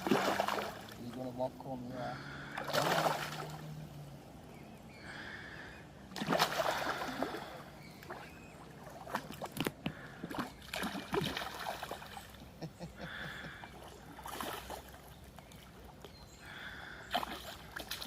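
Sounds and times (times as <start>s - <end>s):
fish thrashing water splashes: 0.0s - 1.0s, 2.3s - 3.8s, 6.1s - 12.3s, 14.1s - 15.7s, 17.1s - 18.0s.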